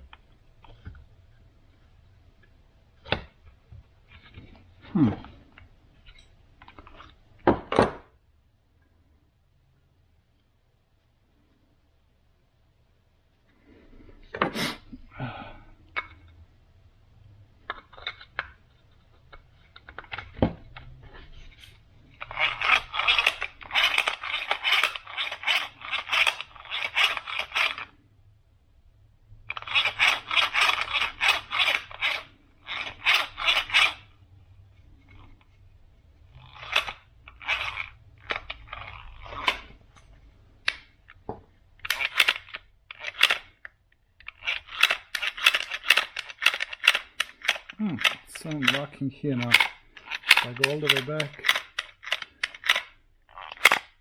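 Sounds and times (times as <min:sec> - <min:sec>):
gears scraping clicks: 0:21.6 - 0:27.9, 0:29.5 - 0:34.2, 0:36.3 - 0:39.8, 0:41.8 - 0:54.0.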